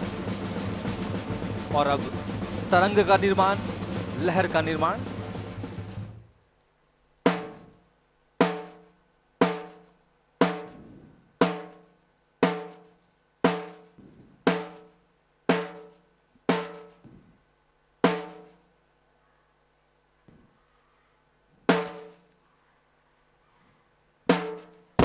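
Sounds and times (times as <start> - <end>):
drum beats ringing: 0.0 - 6.3, 7.2 - 17.4, 18.0 - 18.7, 21.5 - 22.3, 24.2 - 25.0.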